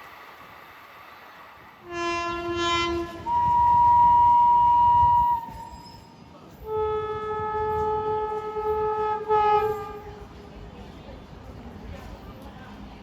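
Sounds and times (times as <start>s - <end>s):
train rumble: 0.0s - 13.0s
locomotive horn: 1.8s - 5.5s, 6.6s - 10.2s.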